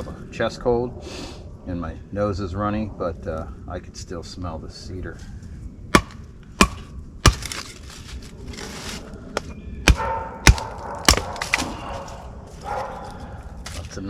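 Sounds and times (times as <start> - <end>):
axe chopping wood: 5.9 - 7.8, 9.8 - 12.1.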